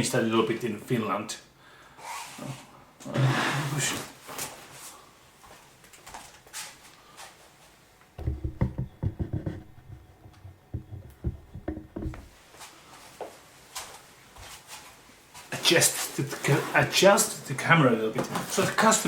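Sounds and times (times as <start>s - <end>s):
microphone handling bumps: 8.2s - 12.4s.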